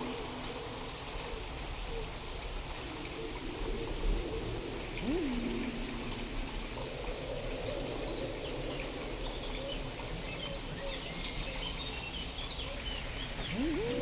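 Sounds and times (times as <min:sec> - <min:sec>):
otherworldly rain: 0:00.0 - 0:14.0
faint high chirps: 0:13.4 - 0:14.0.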